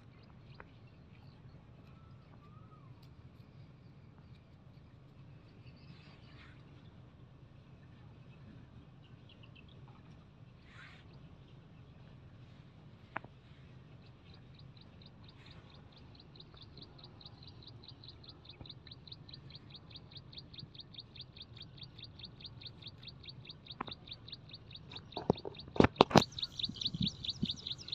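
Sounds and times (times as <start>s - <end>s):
low steady hum: 0.0s - 27.9s
bird chirping rapidly: 14.5s - 27.9s.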